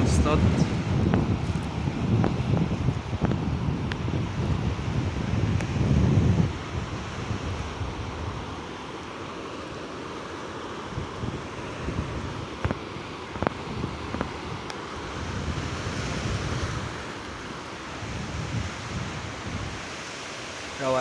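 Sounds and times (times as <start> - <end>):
wind buffeting microphone: 0.0 - 9.1, 10.8 - 20.8
surf washing onto sandy beach: 0.0 - 21.0.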